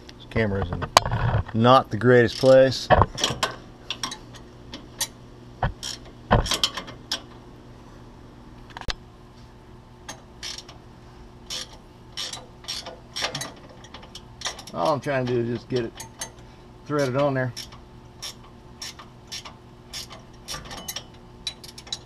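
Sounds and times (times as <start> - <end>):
faint steady hum: 0.0 - 22.0
ratchet wrench clicking: 5.8 - 7.2, 10.4 - 10.7, 11.5 - 13.5, 17.0 - 22.0.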